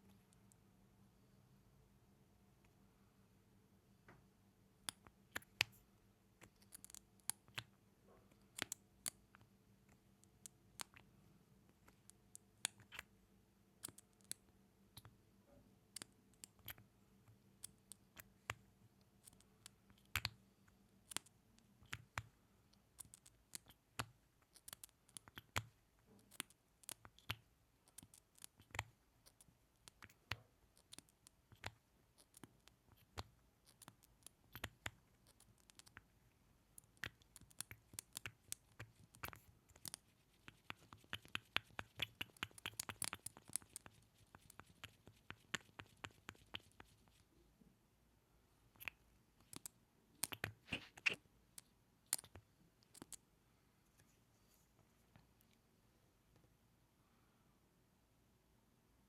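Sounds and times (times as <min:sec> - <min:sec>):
wet mouth clicks and smacks: 0:48.8 - 0:51.2.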